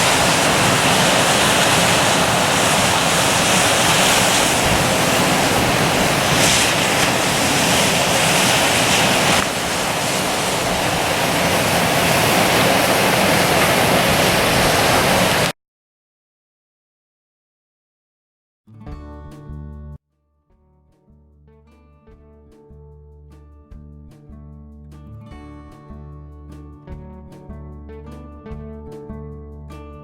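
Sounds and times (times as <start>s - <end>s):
ocean surf breaking on shore: 0.0s - 15.5s
wind: 0.0s - 15.5s.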